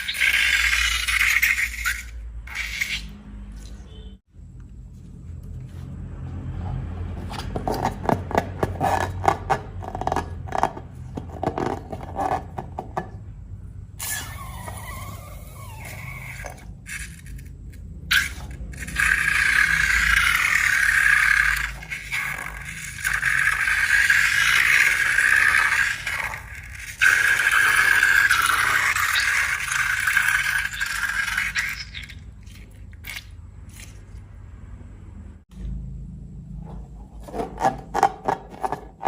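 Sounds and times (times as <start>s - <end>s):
balloon scraping squeak: 0.0s - 3.2s, 14.0s - 17.5s.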